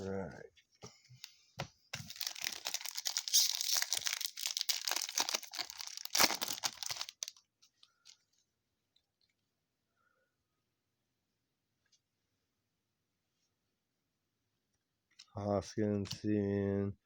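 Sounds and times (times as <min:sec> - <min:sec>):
wrapper tearing and crinkling: 0:02.0 - 0:07.4.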